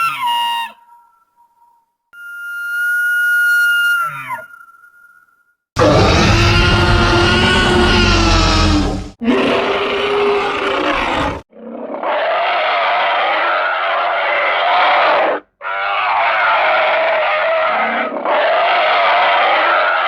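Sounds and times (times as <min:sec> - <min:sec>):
cartoon monster roars: 0:05.8 - 0:20.0.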